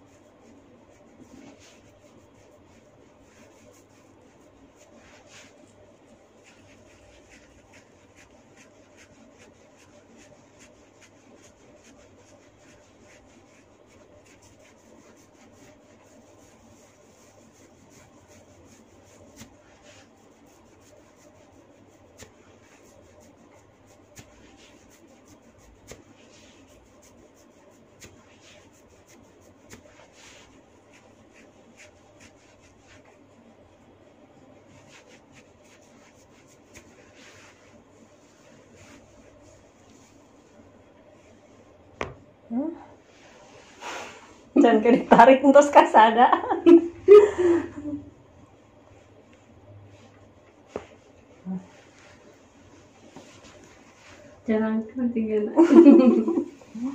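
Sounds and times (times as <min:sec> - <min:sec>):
hands rubbing skin: 0:00.0 - 0:42.2, 0:43.0 - 0:48.0, 0:48.8 - 0:54.4, 0:55.7 - 0:56.9.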